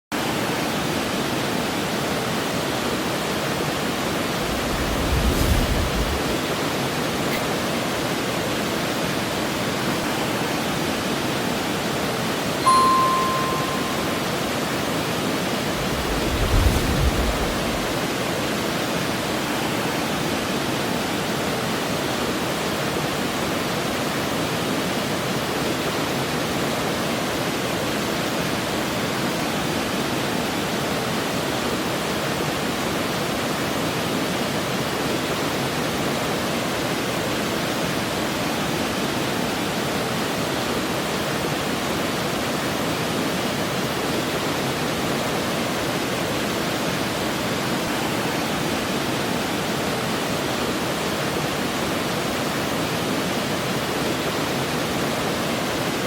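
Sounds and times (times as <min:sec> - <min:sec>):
waterfall rushing: 0:04.1 - 0:06.5, 0:12.6 - 0:14.8, 0:15.6 - 0:18.4
low rumble: 0:04.4 - 0:06.4, 0:15.7 - 0:18.1.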